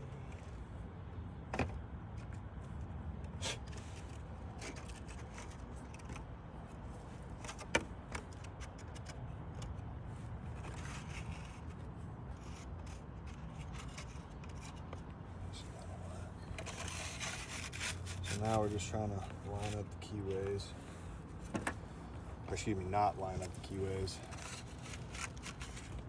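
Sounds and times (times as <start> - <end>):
light scraping: 10.5 - 26.0.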